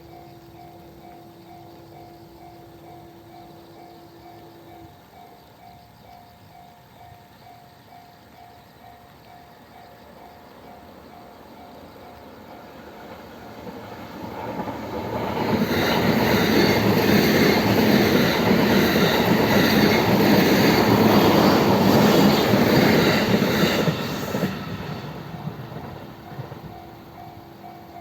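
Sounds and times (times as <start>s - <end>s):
train wheel and rail noise: 0.0s - 28.0s
level crossing warning bell: 25.8s - 28.0s.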